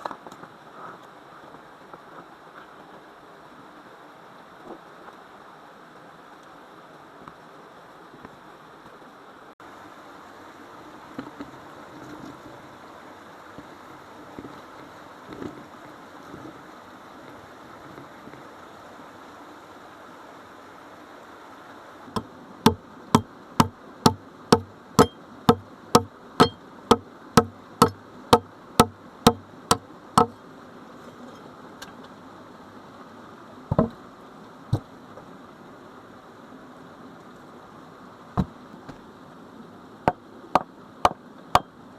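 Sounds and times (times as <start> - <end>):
faint steady hiss: 0.0 - 41.9
sharp striking blows: 22.7 - 30.4.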